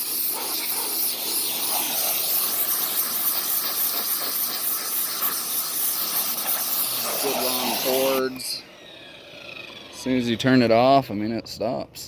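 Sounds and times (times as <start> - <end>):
pressure washer spraying wood: 0.0 - 8.6.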